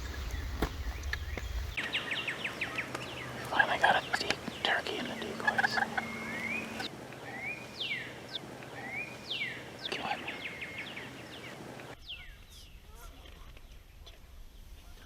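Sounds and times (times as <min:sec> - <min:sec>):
faint steady hum: 0:00.0 - 0:12.0
songbird whistling: 0:00.2 - 0:08.1, 0:08.8 - 0:12.8.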